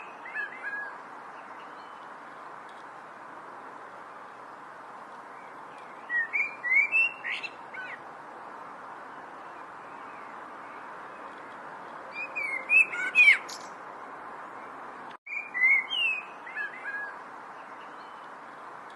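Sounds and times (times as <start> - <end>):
songbird chirping and whistling: 0.0 - 2.1, 5.4 - 8.0, 12.1 - 13.7, 15.3 - 17.2
steady background hiss: 0.0 - 18.9.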